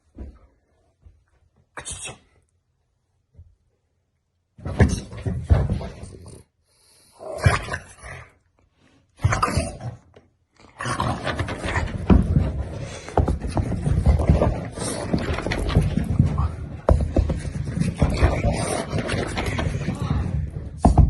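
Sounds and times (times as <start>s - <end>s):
dog growling and snarling: 7.2s - 8.4s, 9.2s - 13.1s, 17.6s - 20.1s.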